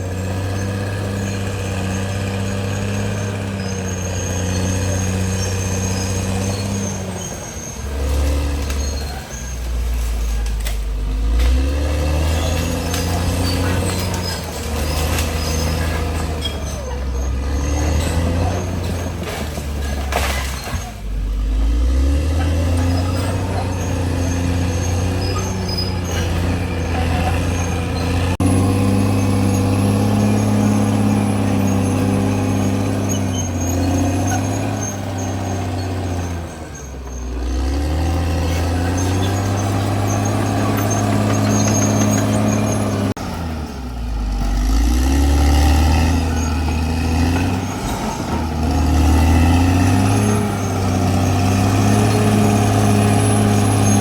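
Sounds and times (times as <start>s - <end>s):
bulldozer diesel engine working: 0.0s - 54.0s.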